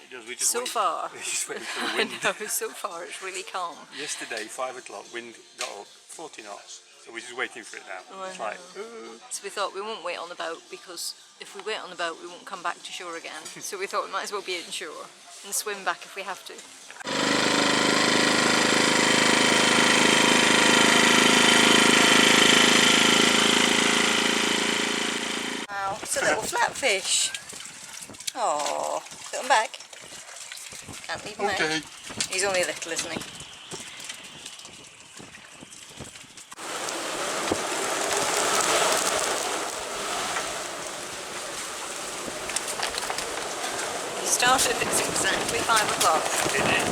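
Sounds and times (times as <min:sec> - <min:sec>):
engine running steadily: 0:17.0 - 0:25.7, 0:36.6 - 0:46.9.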